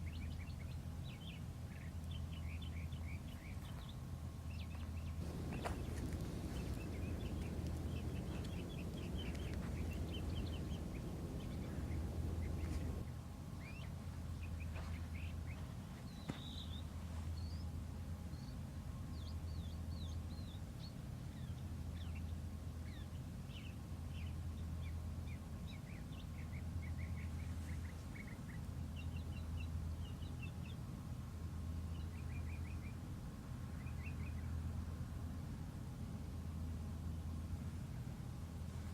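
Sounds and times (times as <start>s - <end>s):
small birds chirping: 0.0s - 13.8s
rush of low noise: 5.2s - 13.0s
steady low rumble: 5.2s - 13.1s.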